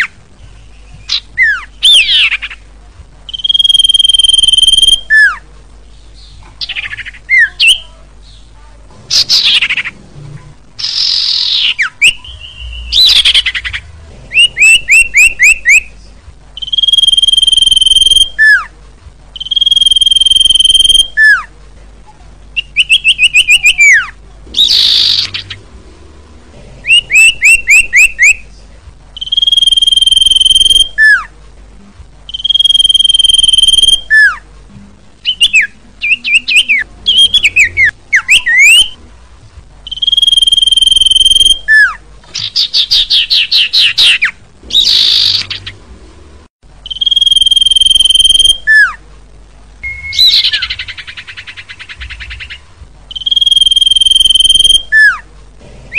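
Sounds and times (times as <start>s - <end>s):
bird whistles and trills: 3.3s - 5.4s, 16.6s - 18.6s, 19.4s - 21.4s, 29.2s - 31.2s, 32.3s - 34.4s, 35.2s - 39.0s, 39.9s - 45.7s, 46.9s - 48.9s, 49.8s - 55.2s.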